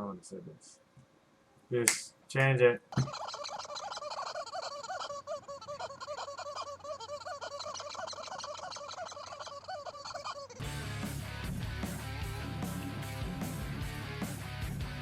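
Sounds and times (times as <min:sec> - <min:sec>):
flock of fowl calling: 0:02.9 - 0:10.6.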